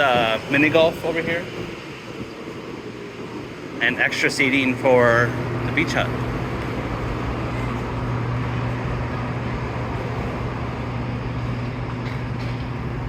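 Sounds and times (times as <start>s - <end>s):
wind noise on microphone: 0.0s - 3.8s
low hum: 4.7s - 13.0s.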